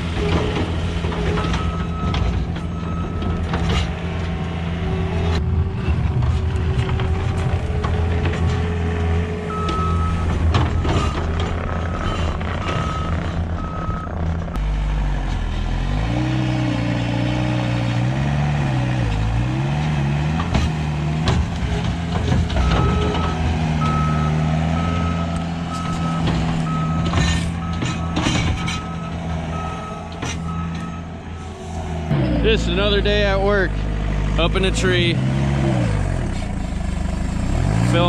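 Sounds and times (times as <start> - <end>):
skid steer engine under load: 0.0 - 38.0
backup alarm beeping: 9.5 - 11.0, 22.6 - 31.5.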